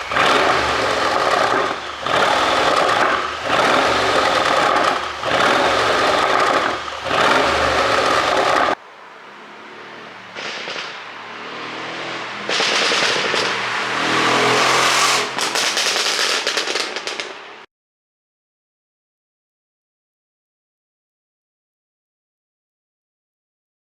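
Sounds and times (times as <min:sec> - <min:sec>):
exhaust crackling pops: 0:00.0 - 0:08.8, 0:10.3 - 0:11.3, 0:12.2 - 0:17.7
car exhaust revving: 0:00.0 - 0:17.6.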